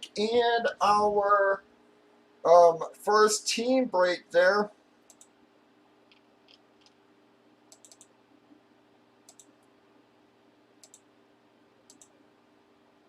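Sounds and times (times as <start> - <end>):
faint steady hum: 0.0 - 13.0
computer mouse clicks: 5.1 - 5.4, 6.1 - 7.0, 7.7 - 8.1, 9.2 - 9.7, 10.8 - 11.1, 11.9 - 12.2.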